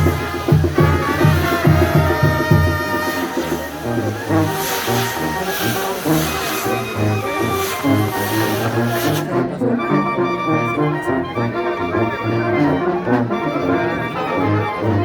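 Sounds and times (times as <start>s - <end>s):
high hiss: 0.0s - 9.3s
brass band playing: 0.0s - 15.0s.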